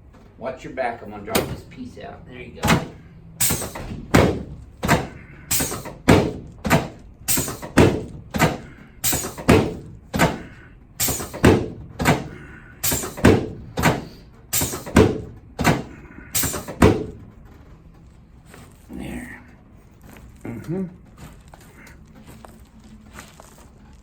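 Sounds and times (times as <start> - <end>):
drop table section clunking: 1.3 - 1.8, 2.6 - 17.3.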